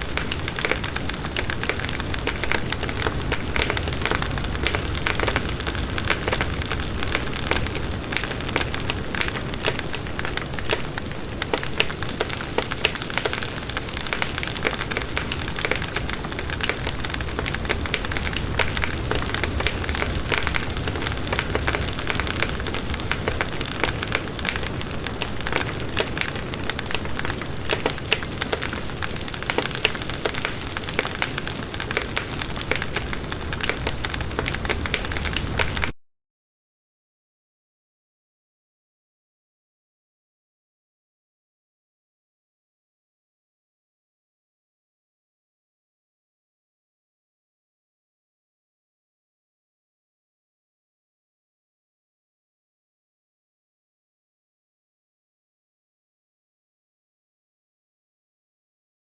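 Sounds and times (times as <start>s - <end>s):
bonfire crackling and popping: 0.0s - 36.0s.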